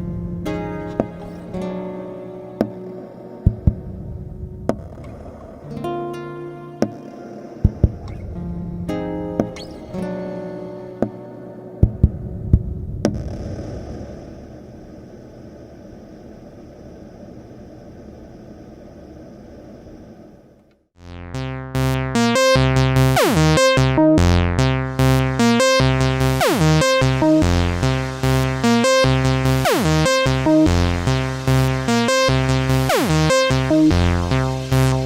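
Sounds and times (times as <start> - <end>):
synth bass line with filter sweeps: 0.0 - 6.2, 21.0 - 35.0.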